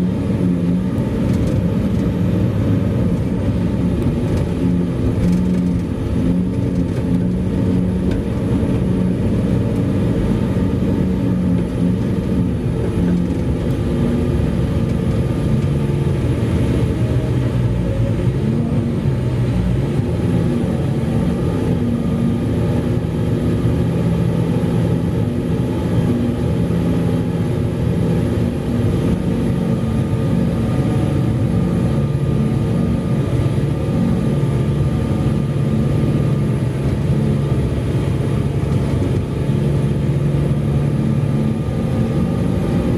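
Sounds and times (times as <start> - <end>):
heavy machinery engine drone: 0.0 - 42.9.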